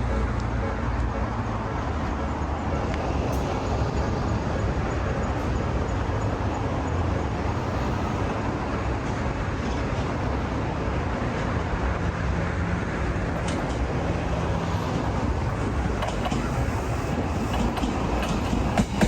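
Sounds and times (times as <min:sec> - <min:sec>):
passing vehicle rumbling: 0:00.0 - 0:18.8.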